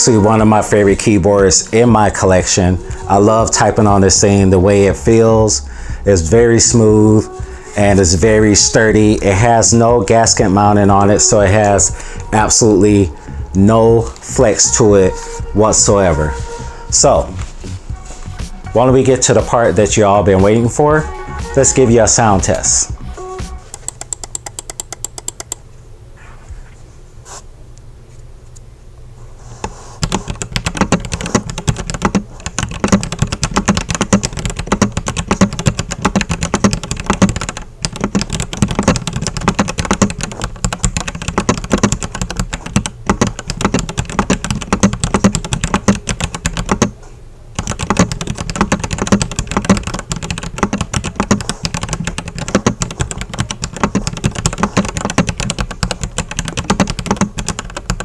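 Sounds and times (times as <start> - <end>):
mechanical keyboard key clacks: 23.7 - 25.6, 47.6 - 58.0.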